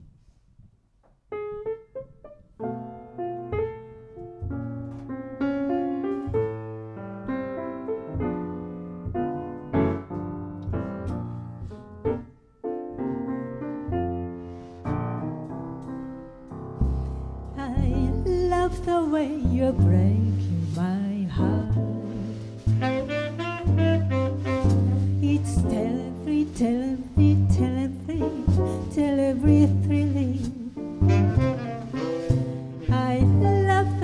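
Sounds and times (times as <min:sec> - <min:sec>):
piano playing jazz chords: 0:01.3 - 0:34.0
vocal song: 0:24.9 - 0:34.0.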